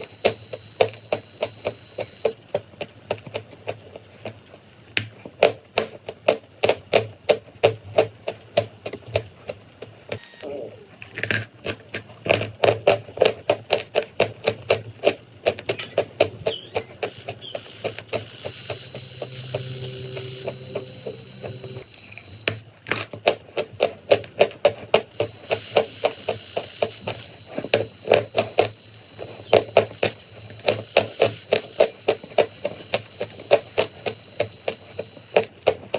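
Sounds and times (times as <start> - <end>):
low steady hum: 15.8 - 22.8.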